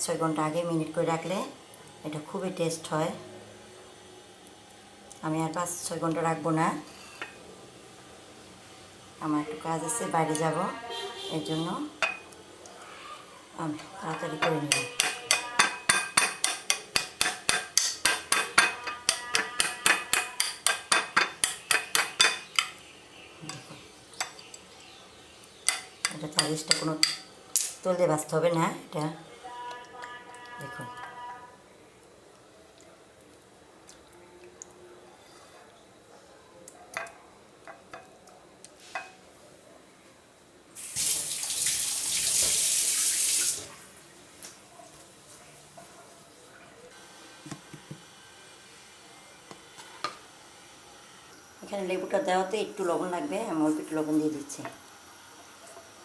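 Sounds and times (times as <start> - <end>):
utensil striking metal bowl: 14.1 - 22.8, 25.6 - 27.8
kitchen tap running: 40.8 - 44.0.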